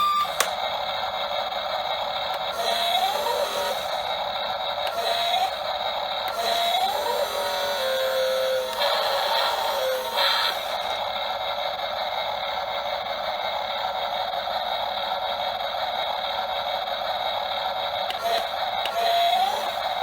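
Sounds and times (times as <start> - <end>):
electric motors whirring: 0.0 - 11.2, 17.8 - 20.0.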